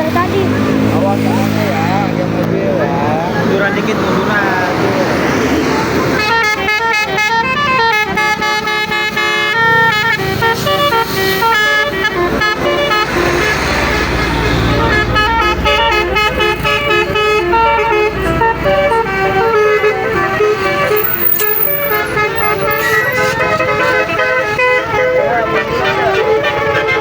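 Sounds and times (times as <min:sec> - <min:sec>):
bus engine rumbling: 0:00.0 - 0:27.0
multi-tone air horn melody: 0:06.0 - 0:27.0.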